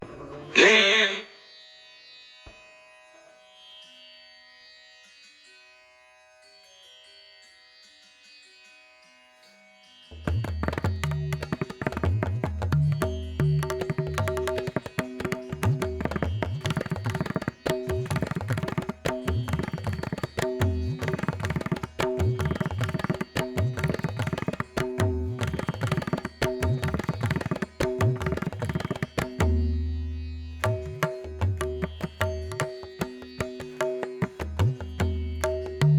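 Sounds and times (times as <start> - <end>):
fast hand-drum rhythm: 10.3 - 29.6, 30.6 - 35.9.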